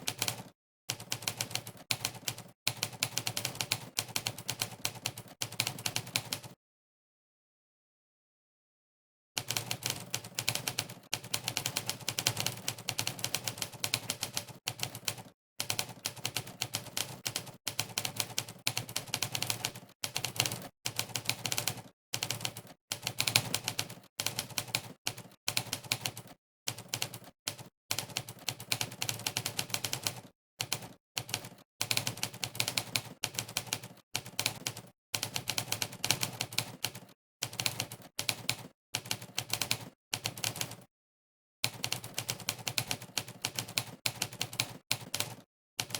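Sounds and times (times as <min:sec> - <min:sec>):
typewriter keystroke clacks: 0:00.0 - 0:06.4, 0:09.4 - 0:40.8, 0:41.6 - 0:45.9.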